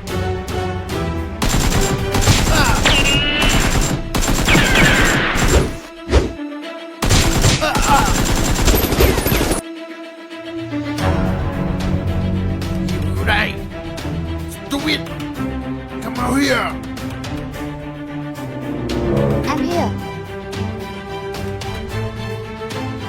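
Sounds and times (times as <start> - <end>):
background music: 0.0 - 23.0
rapid gunfire: 1.4 - 5.8, 7.0 - 9.6.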